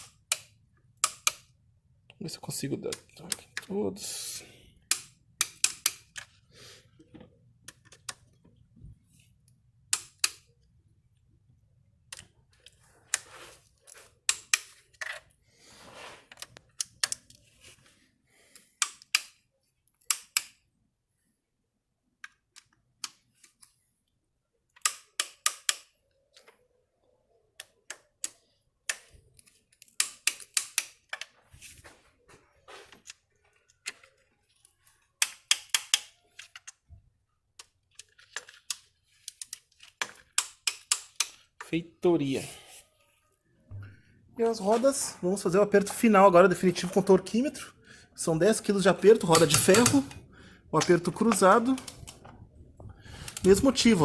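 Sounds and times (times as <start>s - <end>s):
torque wrench ratcheting clicks: 49.3s - 50.2s.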